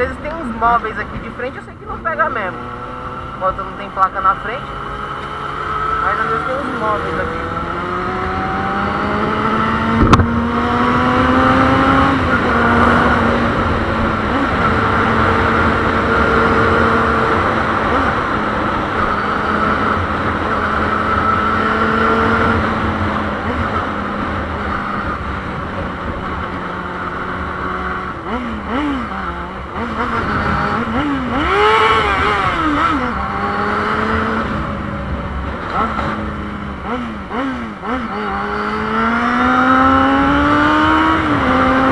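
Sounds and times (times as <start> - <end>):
motorcycle engine accelerating: 0.0 - 41.9.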